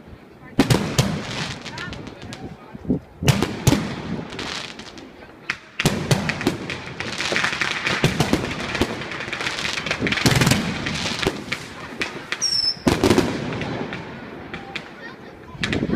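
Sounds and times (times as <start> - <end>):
fireworks bangs and crackling: 0.0 - 15.9
firework whistle: 12.4 - 13.0.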